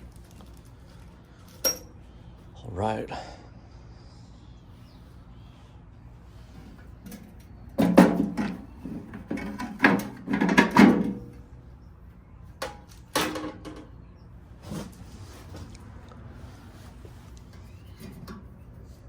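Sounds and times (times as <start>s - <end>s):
metal toolbox clanking: 7.0s - 11.4s.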